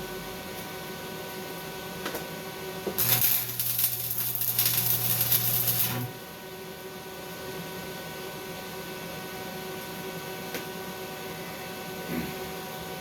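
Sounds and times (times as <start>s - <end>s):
welding arc crackling: 3.0s - 6.2s.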